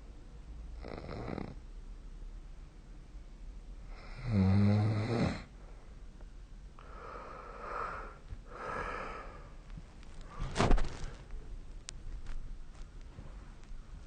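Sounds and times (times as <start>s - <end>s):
person snoring: 3.9s - 5.5s
breathy breaths: 6.8s - 11.5s.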